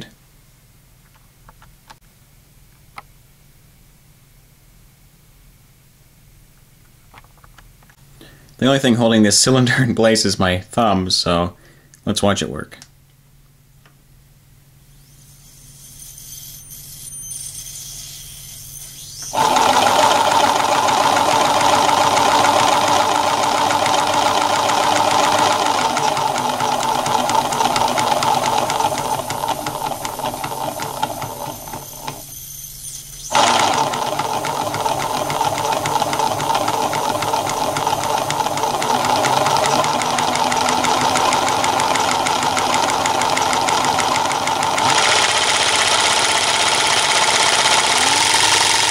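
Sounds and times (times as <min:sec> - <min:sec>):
compressor mechanical rattle: 0:19.0 - 0:48.9.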